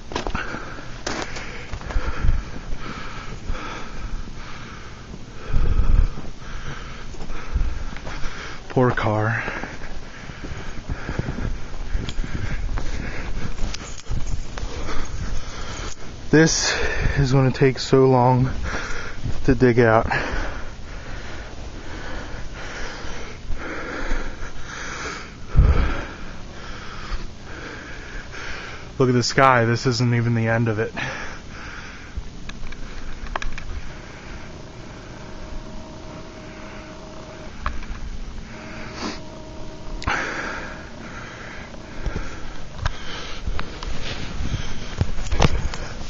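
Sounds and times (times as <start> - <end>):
person breathing and sniffing: 32.8 - 46.0.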